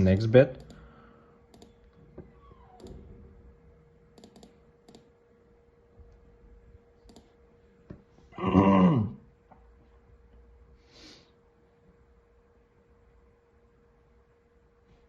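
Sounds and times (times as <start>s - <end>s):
sharp computer clicks: 0.0s - 0.9s, 1.5s - 2.0s, 4.1s - 5.1s, 7.0s - 7.4s
faint steady hum: 0.0s - 15.0s.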